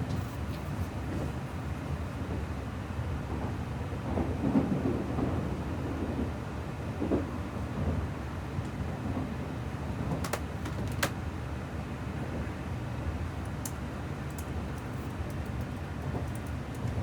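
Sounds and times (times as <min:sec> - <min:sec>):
train cabin low rumble: 0:00.0 - 0:17.0.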